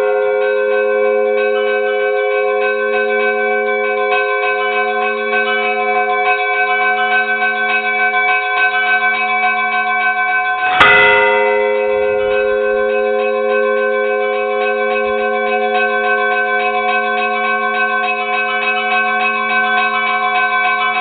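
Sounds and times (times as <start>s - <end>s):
church bells pealing: 0.0s - 21.0s
heavy bell strike: 10.6s - 17.8s.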